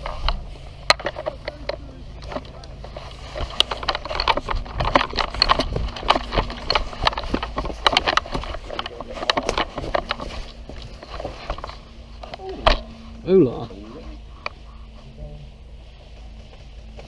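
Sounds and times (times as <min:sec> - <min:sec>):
footsteps crunching through undergrowth: 0:00.0 - 0:17.0.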